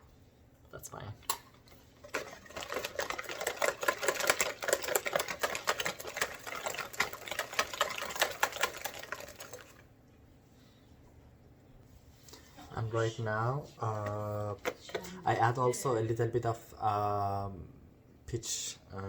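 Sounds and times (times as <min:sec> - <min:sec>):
whisk clicking against bowl: 0:01.3 - 0:09.8.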